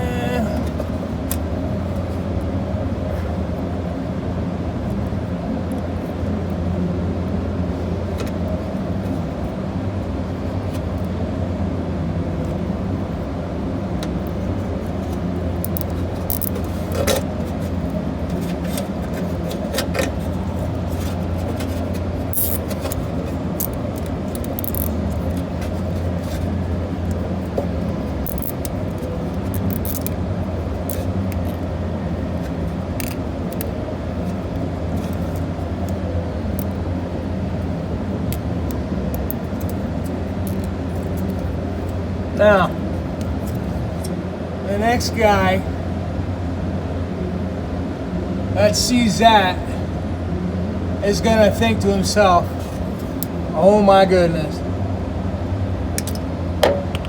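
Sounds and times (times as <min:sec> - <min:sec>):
low mechanical hum: 0:00.0 - 0:57.0
zip ties clicking: 0:22.3 - 0:25.4, 0:28.2 - 0:28.8, 0:29.5 - 0:30.2.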